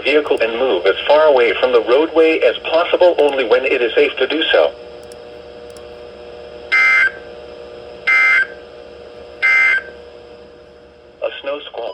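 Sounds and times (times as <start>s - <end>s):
faint steady hum: 0.0s - 11.9s
digital data tone bursts: 8.1s - 8.5s, 9.4s - 9.9s.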